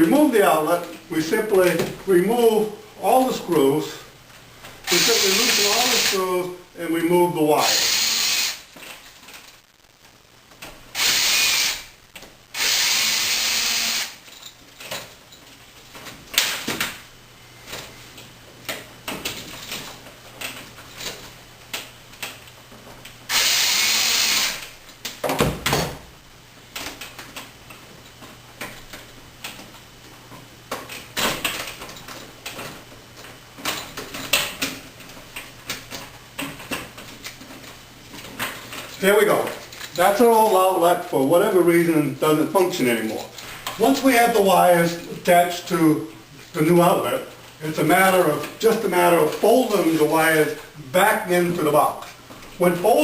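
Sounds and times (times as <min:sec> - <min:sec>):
power drill driving screws: 0:04.9 - 0:06.2, 0:07.6 - 0:08.7, 0:10.9 - 0:11.9, 0:12.6 - 0:14.2, 0:23.3 - 0:24.7.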